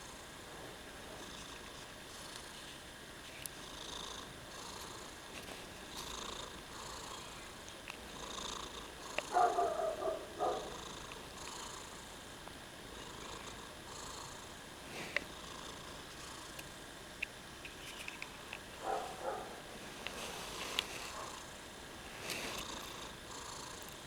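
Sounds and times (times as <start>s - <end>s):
cat snoring: 1.1s - 2.6s, 3.6s - 5.3s, 5.9s - 12.2s, 12.9s - 16.6s, 20.2s - 24.0s.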